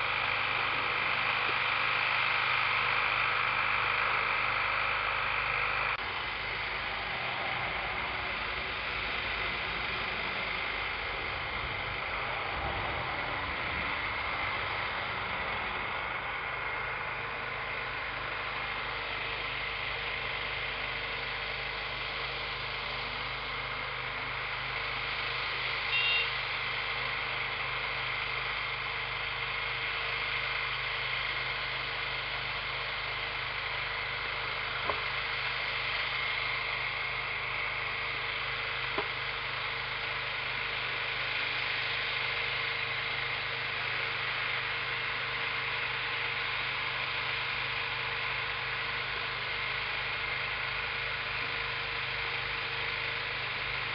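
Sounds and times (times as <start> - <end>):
spraying machine engine hum: 0.0 - 53.9
steady hiss of sprayer: 0.0 - 53.9
short high beep: 25.9 - 26.3.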